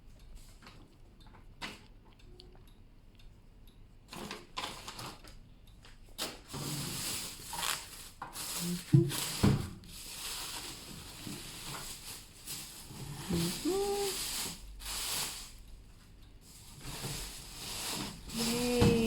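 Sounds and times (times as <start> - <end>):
packaging rustling: 6.9 - 15.6, 16.6 - 18.8
person humming: 13.1 - 14.4, 18.3 - 19.0.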